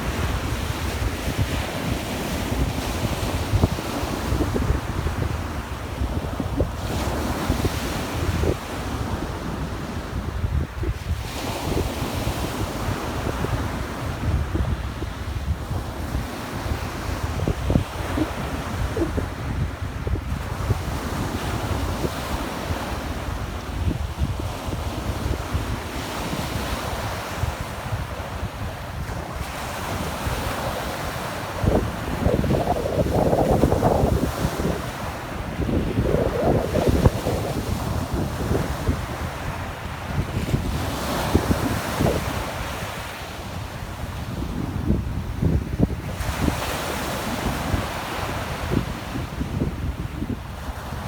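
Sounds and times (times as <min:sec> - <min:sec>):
sea surf washing onto beach: 0:00.0 - 0:51.0
wind buffeting microphone: 0:00.0 - 0:51.0
sea waves breaking: 0:16.0 - 0:19.6, 0:26.8 - 0:43.3.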